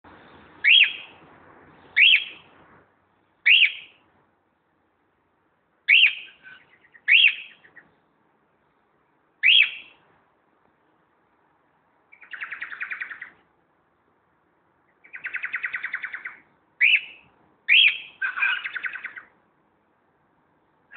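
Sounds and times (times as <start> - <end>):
cockatiel whistled calls: 0.6 - 1.1, 2.0 - 2.4, 3.5 - 4.0, 5.9 - 7.8, 9.4 - 10.0, 12.2 - 13.3, 15.1 - 19.3.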